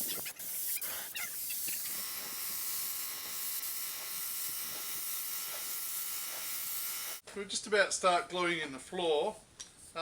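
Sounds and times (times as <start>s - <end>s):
mechanical hum: 0.0s - 7.2s.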